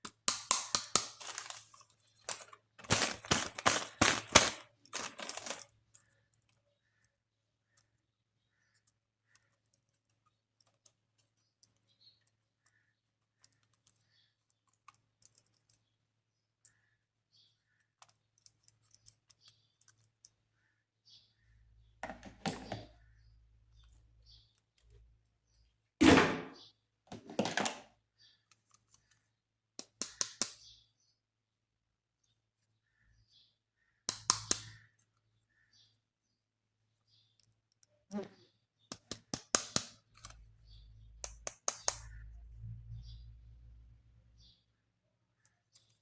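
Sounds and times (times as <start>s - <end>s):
plastic toys and packaging handled: 0.1s - 8.1s, 22.0s - 25.8s, 26.5s - 30.4s
sharp clicks: 29.8s - 30.6s, 34.1s - 34.8s, 41.2s - 42.2s.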